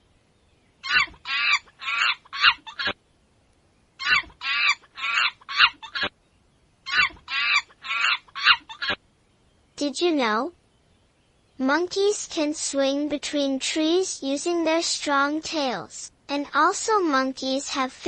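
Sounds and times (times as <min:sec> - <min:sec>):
monkey chattering: 0:00.8 - 0:03.0, 0:04.0 - 0:06.1, 0:06.9 - 0:09.0.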